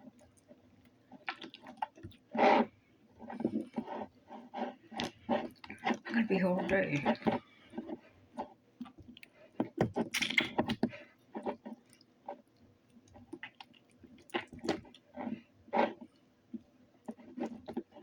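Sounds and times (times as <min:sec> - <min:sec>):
slime squelching: 0:01.1 - 0:08.0.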